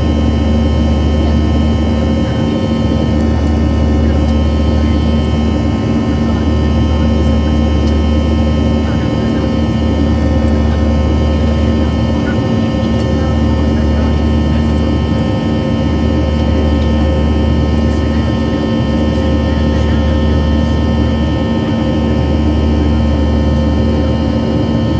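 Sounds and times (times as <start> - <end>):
jet engines droning: 0.0 - 24.9.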